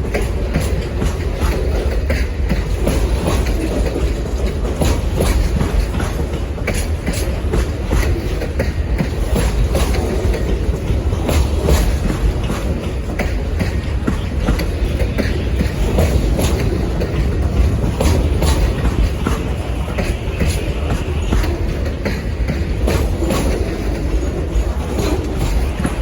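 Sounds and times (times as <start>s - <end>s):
railcars rumbling past: 0.0s - 26.0s
wheels clicking over rail joints: 0.0s - 26.0s.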